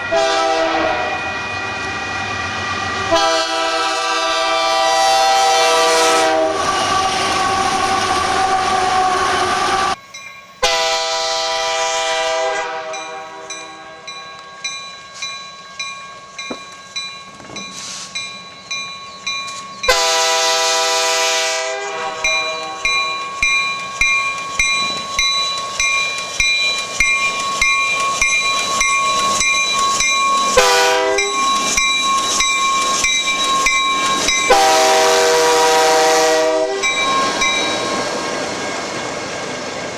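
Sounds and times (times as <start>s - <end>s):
locomotive air horn chord: 0.1s - 1.3s, 3.0s - 10.0s, 10.6s - 13.5s, 19.9s - 22.9s, 30.6s - 31.4s, 34.5s - 36.9s
steady high tones: 12.9s - 20.0s, 22.1s - 34.8s, 36.8s - 39.9s.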